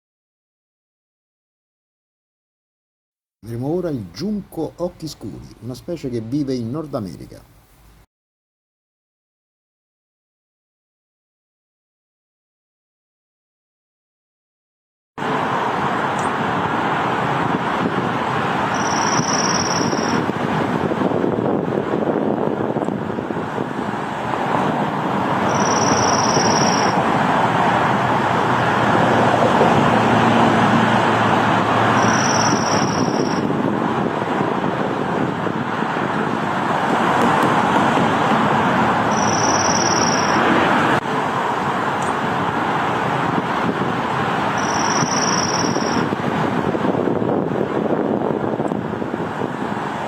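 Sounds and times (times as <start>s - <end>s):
road traffic rushing: 3.4s - 8.1s, 15.2s - 50.0s
bird singing high trill: 18.7s - 20.2s, 25.5s - 27.0s, 32.0s - 33.5s, 39.1s - 40.4s, 44.6s - 46.1s.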